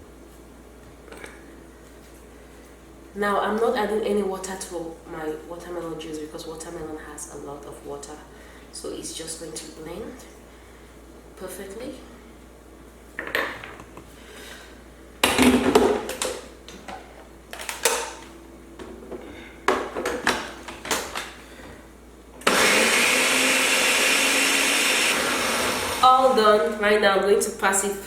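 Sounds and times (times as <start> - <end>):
electric blender running: 22.4 - 26.4.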